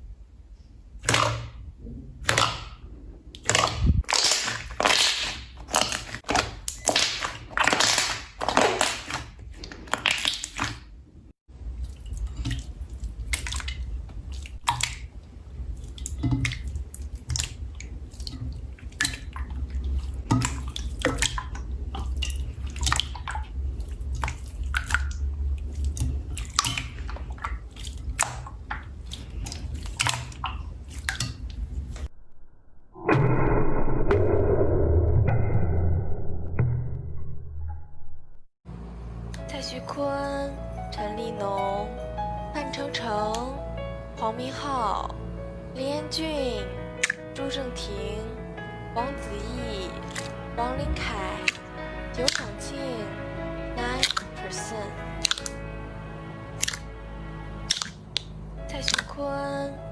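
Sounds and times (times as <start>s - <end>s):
slime squelching and popping: 1.0s - 1.6s, 2.2s - 11.0s, 11.8s - 31.6s, 47.0s - 47.2s, 50.1s - 50.3s, 51.0s - 52.6s, 53.9s - 54.4s, 55.2s - 55.6s, 56.5s - 56.9s, 57.6s - 59.1s
small crackling pops: 55.2s - 55.6s.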